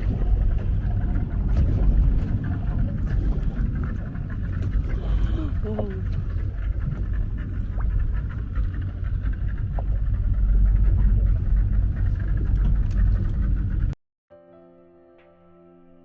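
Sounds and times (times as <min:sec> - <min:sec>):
boat engine rumble: 0:00.0 - 0:14.0
wind buffeting microphone: 0:00.0 - 0:14.0
soft music with held notes: 0:14.3 - 0:16.0.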